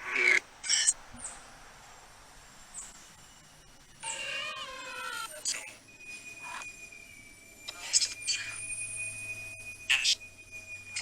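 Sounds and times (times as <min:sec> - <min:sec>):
wavering pitched sound sliding down: 0:04.0 - 0:11.0.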